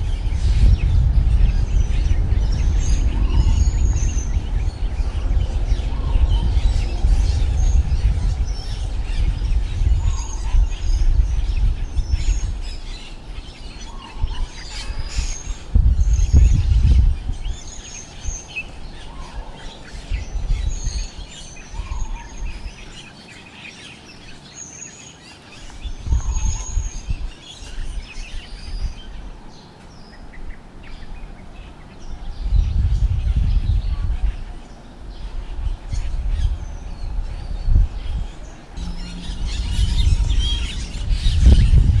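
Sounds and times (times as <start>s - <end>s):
strong wind buffeting microphone: 0.0s - 23.2s, 25.6s - 42.0s
birds chirping: 0.0s - 42.0s.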